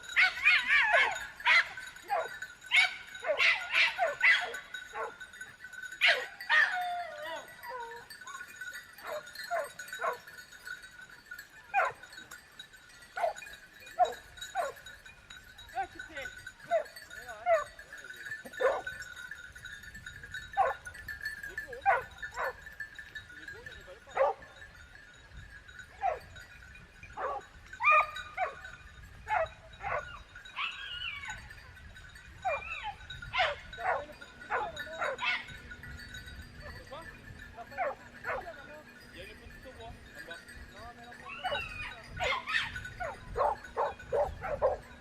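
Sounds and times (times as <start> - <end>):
dog barking: 0.2 - 5.2, 6.0 - 6.8, 9.0 - 10.2, 11.7 - 12.0, 13.2 - 13.4, 14.0 - 14.8, 16.7 - 17.7, 18.6 - 18.9, 20.6 - 20.8, 21.8 - 22.6, 24.2 - 24.4, 26.0 - 26.3, 27.2 - 28.6, 29.3 - 30.8, 32.5 - 35.5, 37.8 - 38.5, 41.4 - 44.8
dog yipping and whining: 6.0 - 8.4, 29.3 - 31.4, 32.4 - 35.5, 41.3 - 44.8.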